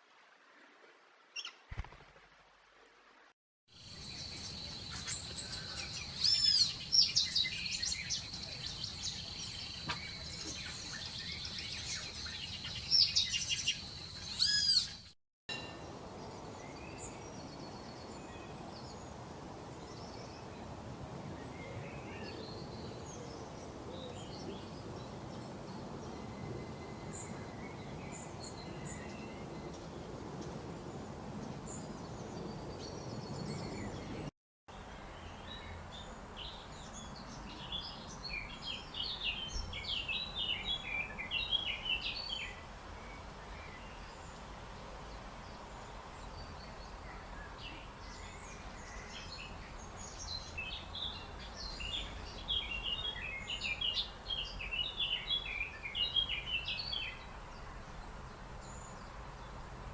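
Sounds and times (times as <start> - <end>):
birds chirping: 3.9 - 19.1.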